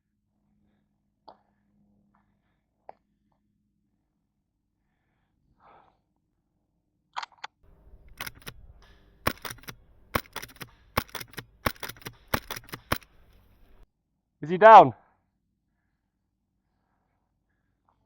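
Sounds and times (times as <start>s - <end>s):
gun shots cracking: 7.7s - 13.8s
light clicks: 7.7s - 13.8s.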